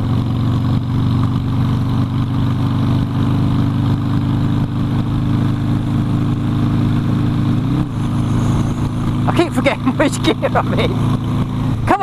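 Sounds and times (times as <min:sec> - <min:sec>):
motorcycle engine cruising: 0:00.0 - 0:12.0
wind and road noise: 0:00.0 - 0:12.0.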